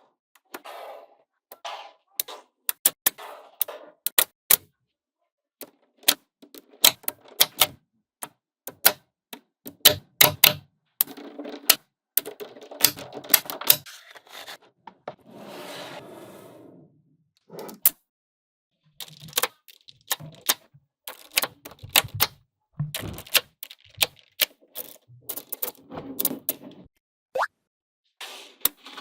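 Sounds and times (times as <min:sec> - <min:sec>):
magnetic balls clicking together: 0:19.0 - 0:25.8
magnetic balls rattling: 0:19.0 - 0:26.6.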